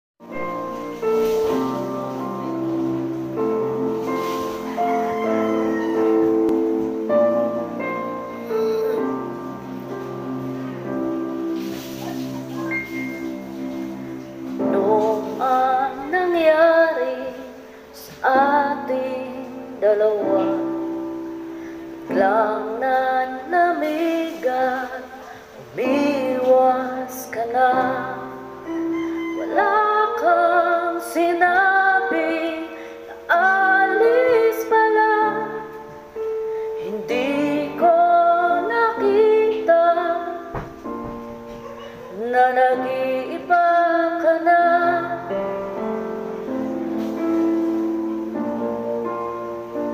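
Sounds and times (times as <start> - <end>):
held accompaniment chords: 0.2 - 24.9
woman singing ballad: 14.5 - 21.2, 22.0 - 41.1, 42.0 - 45.6.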